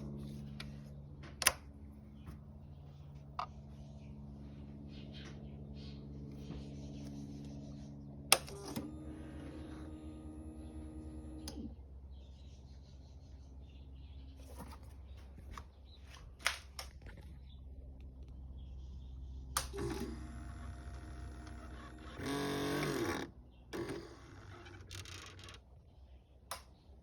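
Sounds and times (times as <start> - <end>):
low steady hum: 0.0 - 27.0.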